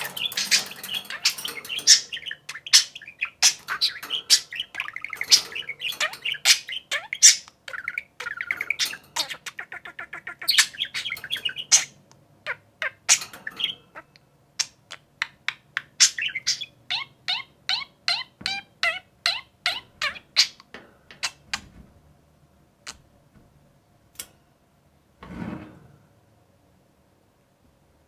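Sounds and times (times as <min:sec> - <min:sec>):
budgerigars warbling: 0:00.0 - 0:21.6.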